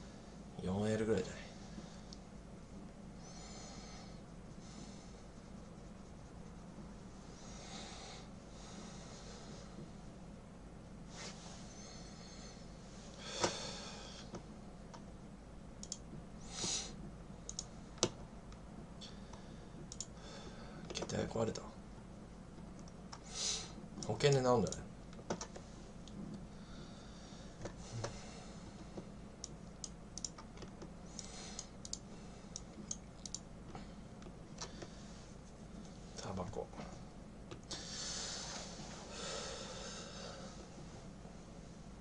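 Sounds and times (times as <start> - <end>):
low room hum: 0.0 - 42.0
small clicks at a desk: 15.8 - 16.1, 17.5 - 18.2, 29.4 - 33.4
computer keyboard keystrokes: 29.8 - 30.9.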